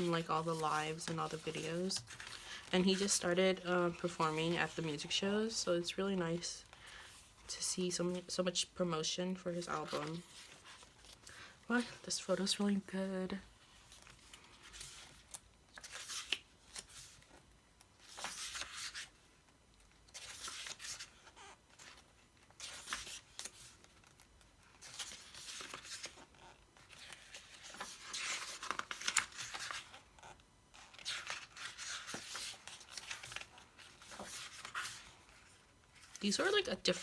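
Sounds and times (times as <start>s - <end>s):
album pages turning: 0.0s - 5.6s, 13.7s - 19.2s, 20.1s - 37.0s.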